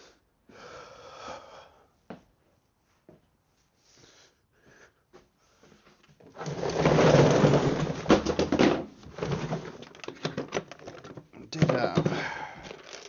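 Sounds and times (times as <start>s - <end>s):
metal tools clattering: 9.5s - 13.0s.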